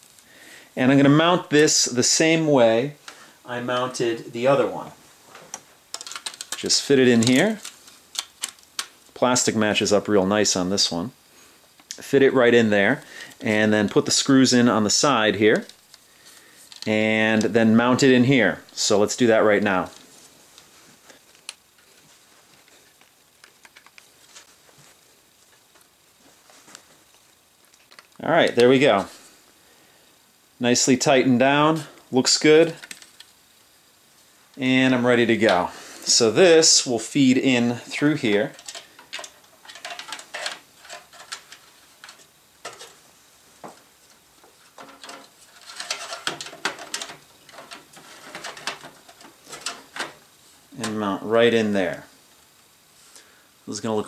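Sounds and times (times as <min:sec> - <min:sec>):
cable handling clicks and rubbing: 0:05.4 - 0:09.0, 0:15.3 - 0:17.6, 0:19.6 - 0:28.7, 0:32.6 - 0:33.4, 0:38.1 - 0:43.0, 0:43.7 - 0:50.2
screwdriver clicks and scrapes: 0:44.8 - 0:50.1.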